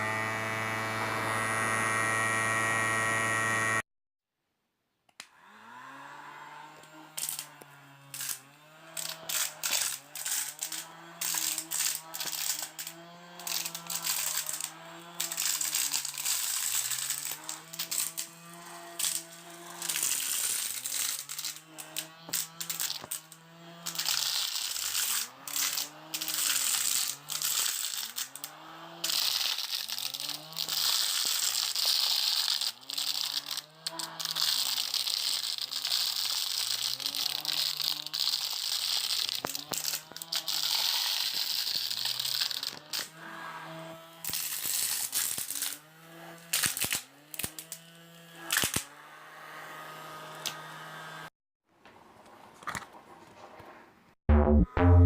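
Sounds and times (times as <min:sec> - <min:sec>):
small electric motor whining: 0:00.0 - 0:03.8, 0:05.3 - 0:51.3.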